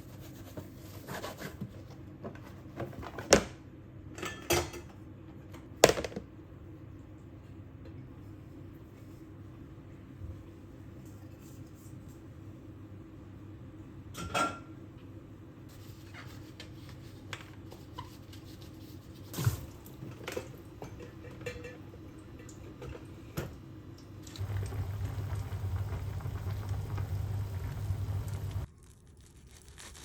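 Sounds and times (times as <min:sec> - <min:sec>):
steady low hum: 0:24.4 - 0:29.2.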